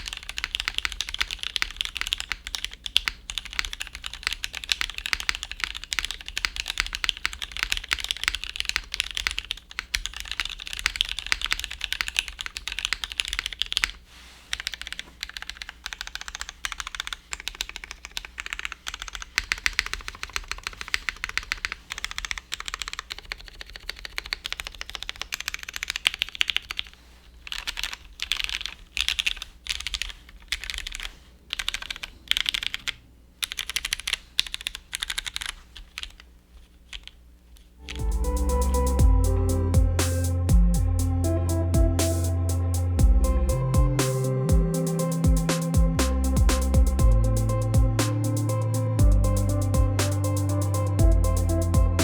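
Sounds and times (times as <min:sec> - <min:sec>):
mechanical keyboard typing: 0:00.0 - 0:36.3
low computer hum: 0:00.0 - 0:52.0.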